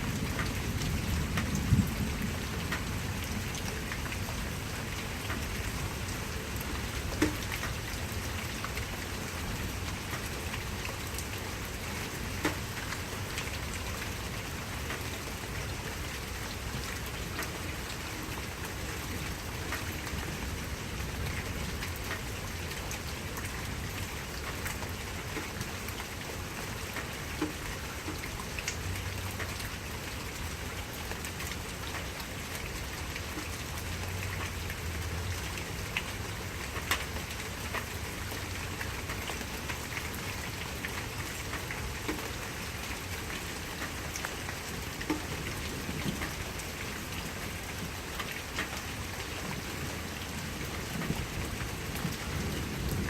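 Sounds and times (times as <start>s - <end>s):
steady rain hiss: 0.0s - 53.0s.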